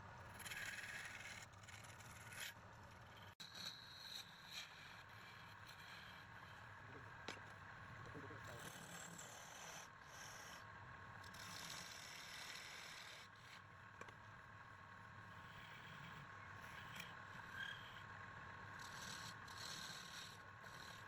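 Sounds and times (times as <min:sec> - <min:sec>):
tool scraping spinning wood: 0:00.3 - 0:07.4, 0:18.7 - 0:21.0.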